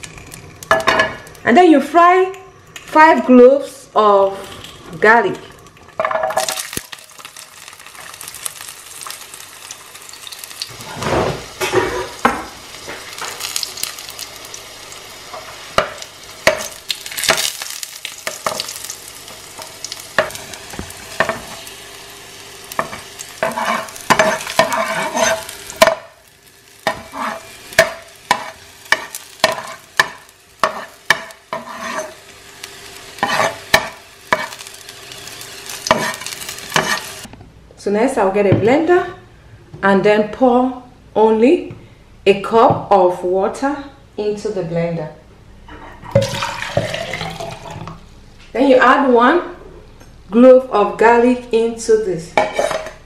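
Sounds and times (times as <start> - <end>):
garlic sizzling in oil: 4.2 - 37.3
utensil scraping and tapping pan: 35.9 - 37.1.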